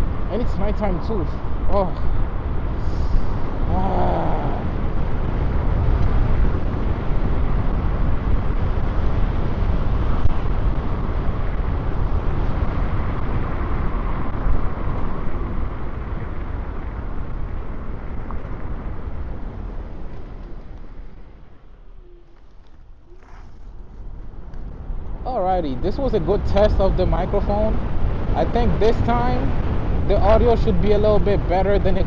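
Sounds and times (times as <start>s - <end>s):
electric scooter motor and road noise: 0.0s - 32.0s
wind rushing over microphone: 0.0s - 32.0s.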